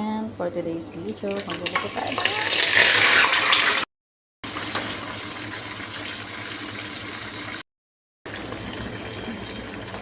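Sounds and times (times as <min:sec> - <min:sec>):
fish frying in hot oil: 0:04.4 - 0:07.6.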